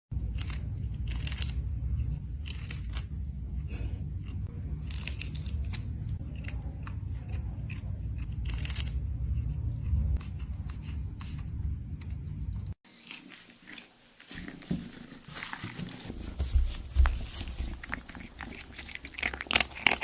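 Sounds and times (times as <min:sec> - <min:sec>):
steady low hum: 0:00.1 - 0:13.8
cat chewing with crunches: 0:00.2 - 0:20.0.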